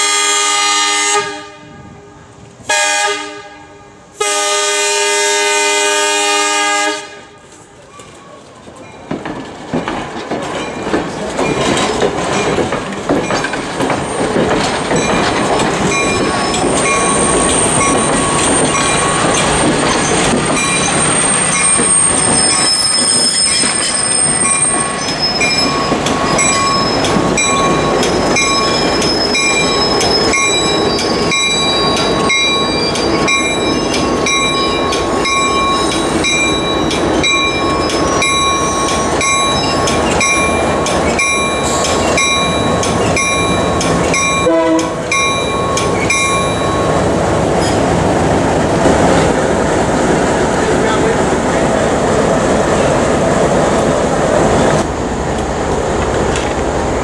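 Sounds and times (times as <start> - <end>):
train rumbling on track: 0.0 - 57.0
wheels clicking over rail joints: 7.8 - 46.9, 54.7 - 57.0
high wheel squeal: 15.9 - 44.5.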